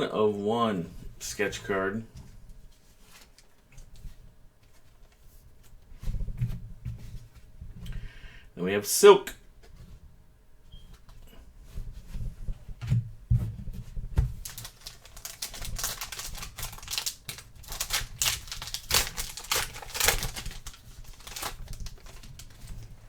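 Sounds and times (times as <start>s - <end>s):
pack wrapper crinkling and tearing: 14.4s - 23.0s.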